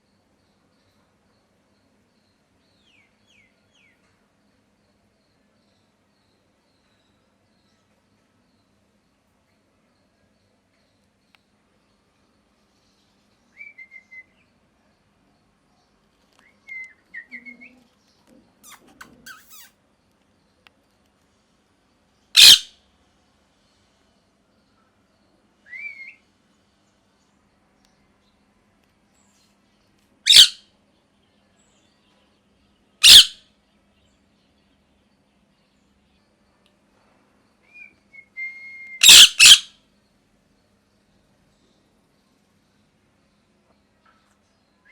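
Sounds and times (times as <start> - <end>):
parrot calling: 18.5 - 19.8, 22.4 - 22.7, 30.3 - 30.6, 33.0 - 33.4, 39.0 - 39.7
parakeet chirping: 18.6 - 19.7, 22.4 - 22.7, 30.3 - 30.6, 33.0 - 33.4, 39.0 - 39.7.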